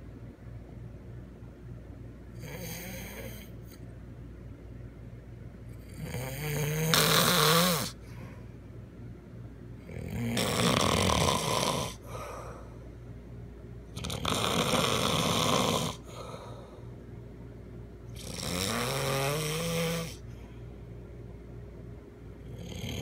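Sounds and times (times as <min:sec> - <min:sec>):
man snoring loudly: 0:02.4 - 0:03.5, 0:05.8 - 0:08.0, 0:09.8 - 0:12.2, 0:14.0 - 0:16.2, 0:18.2 - 0:20.2, 0:22.5 - 0:23.0.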